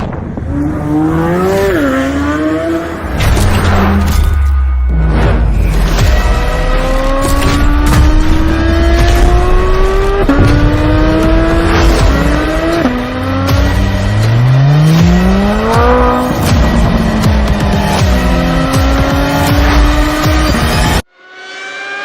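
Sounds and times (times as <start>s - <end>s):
vehicle engine accelerating: 6.0s - 22.0s.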